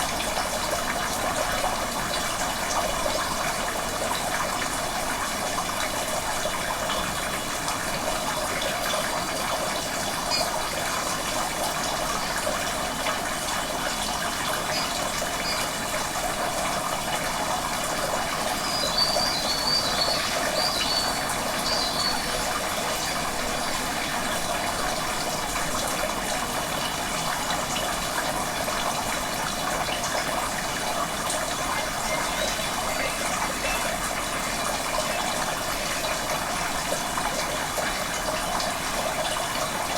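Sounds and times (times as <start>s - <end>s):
flowing water rushing: 0.0s - 39.9s
faint high chirps: 18.6s - 25.2s, 31.6s - 35.4s.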